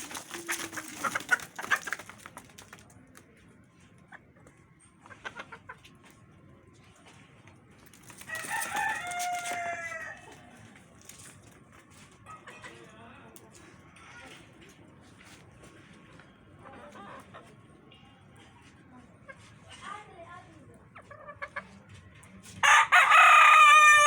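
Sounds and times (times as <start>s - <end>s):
rustling: 0.0s - 2.8s
chickens clucking: 0.0s - 3.2s, 3.8s - 6.4s, 16.5s - 17.9s, 20.9s - 21.9s
rooster crowing: 8.3s - 10.3s, 22.6s - 24.0s.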